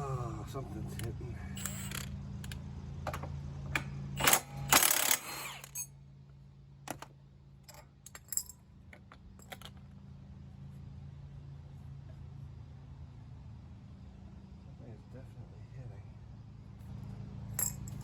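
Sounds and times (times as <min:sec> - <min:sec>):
steady low hum: 0:00.0 - 0:18.0
metal tools clattering: 0:01.6 - 0:02.1, 0:07.7 - 0:08.6, 0:17.6 - 0:18.0.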